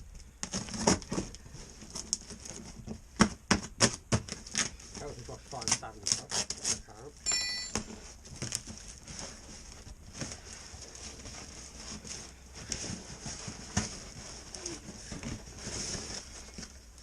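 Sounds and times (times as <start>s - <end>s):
packaging rustling: 7.7s - 17.0s.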